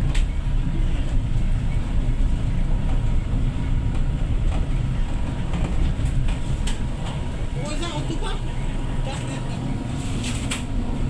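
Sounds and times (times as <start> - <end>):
vehicle engine and road rumble: 0.0 - 11.0.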